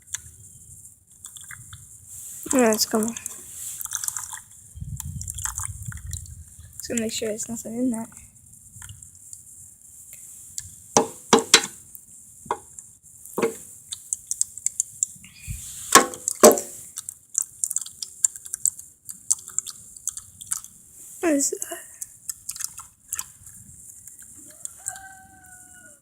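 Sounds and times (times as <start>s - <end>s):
knocks and clunks of objects set down: 11.0s - 11.8s, 13.4s - 13.6s, 15.9s - 16.8s
small clicks of hard objects: 16.0s - 20.7s.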